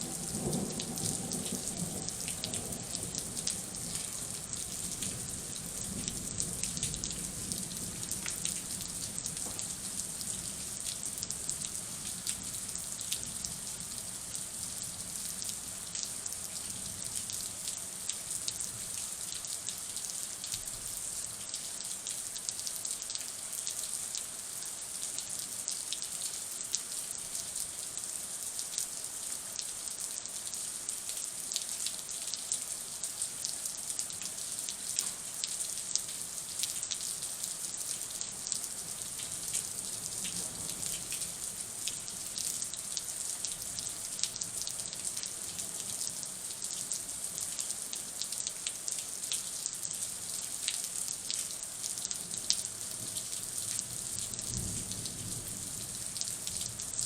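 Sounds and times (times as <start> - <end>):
rain falling: 0.0 - 57.0.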